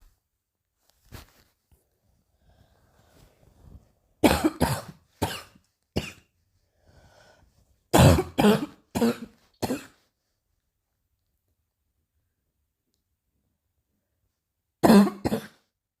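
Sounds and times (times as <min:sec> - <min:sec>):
person coughing: 0:04.2 - 0:06.2, 0:08.0 - 0:10.0, 0:14.8 - 0:15.6.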